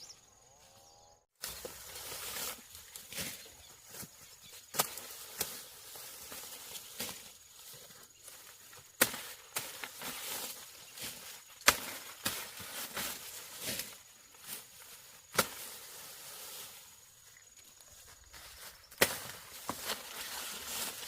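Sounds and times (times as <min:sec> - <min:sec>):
hand tool chopping: 0:11.6 - 0:13.9.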